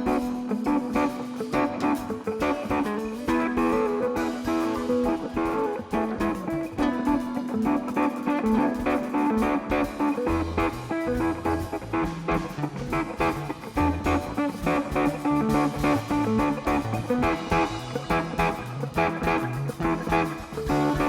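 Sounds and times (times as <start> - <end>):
live rock band: 0.0 - 21.0
bass line: 9.4 - 21.0.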